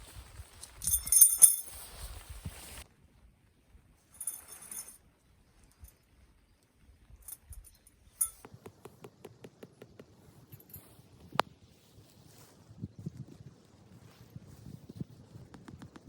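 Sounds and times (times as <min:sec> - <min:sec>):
metallic clinking and jingling: 0:00.6 - 0:01.8, 0:04.1 - 0:05.0, 0:07.2 - 0:08.4.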